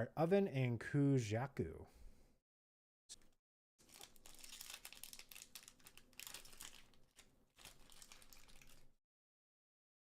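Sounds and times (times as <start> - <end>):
foil wrapper crinkling and tearing: 3.8 - 9.0.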